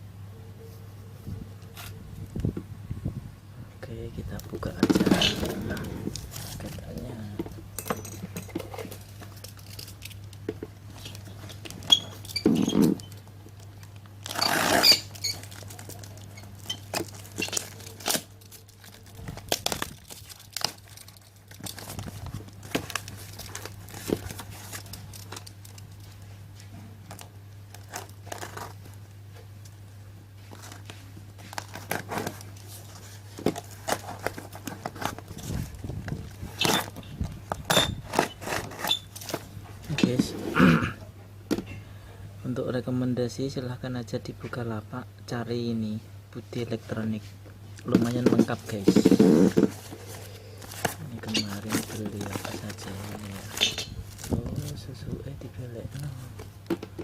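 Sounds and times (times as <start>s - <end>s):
steady low hum: 0.0s - 57.0s
packaging crinkling and tearing: 4.4s - 7.3s, 8.7s - 26.4s, 27.0s - 29.8s, 30.4s - 39.5s, 47.8s - 54.8s
clicks and rustles: 4.4s - 29.8s, 47.7s - 54.8s
loud paper rip: 14.3s - 15.2s.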